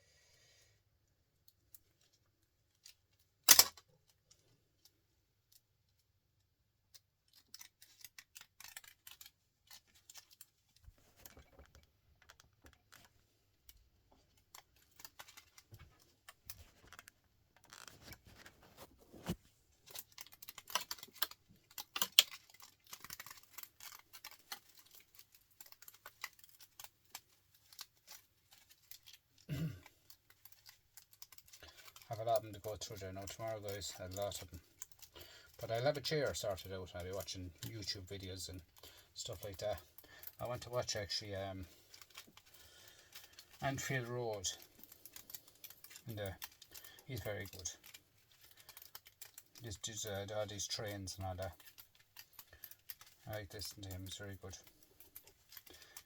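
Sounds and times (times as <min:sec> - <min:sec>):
hand tools clicking and snipping: 0:03.4 - 0:03.8.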